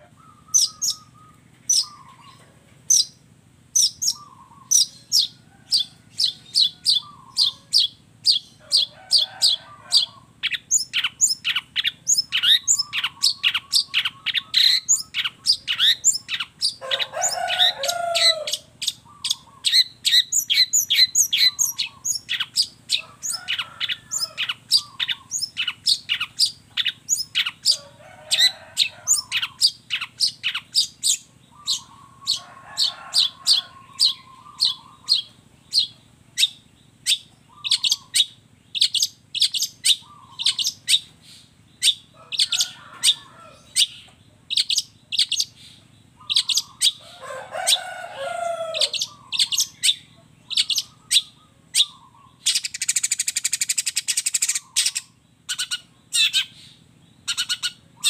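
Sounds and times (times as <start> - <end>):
bird singing sharp high chirps: 0.2 - 3.2, 3.8 - 8.9, 10.4 - 27.8, 33.2 - 42.6, 48.7 - 57.8.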